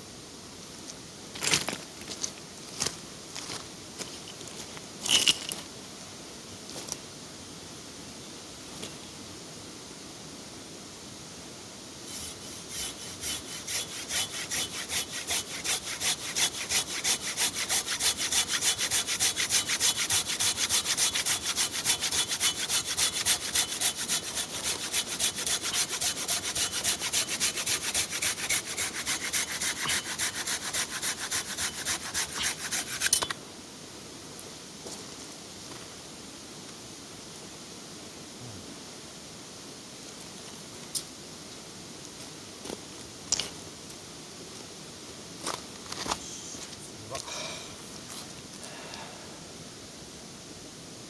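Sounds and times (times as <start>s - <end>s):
handsaw cutting through log: 12.1s - 33.2s.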